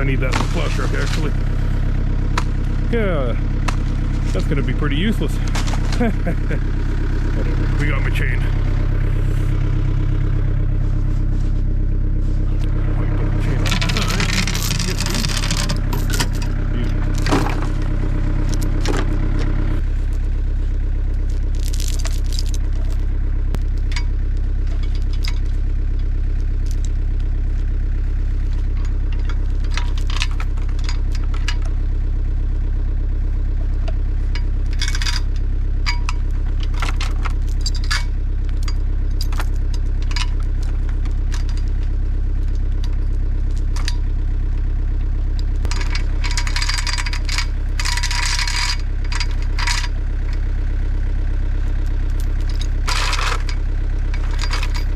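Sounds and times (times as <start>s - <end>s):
engine running: 0.0s - 54.9s
metallic clinks and rattles: 13.5s - 19.6s, 21.2s - 27.4s, 28.4s - 31.8s, 33.6s - 44.2s, 44.8s - 50.6s, 51.7s - 54.9s.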